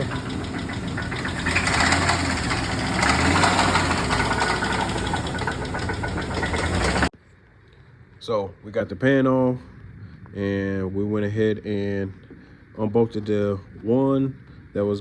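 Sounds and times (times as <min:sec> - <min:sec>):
engine knocking: 0:00.0 - 0:07.1.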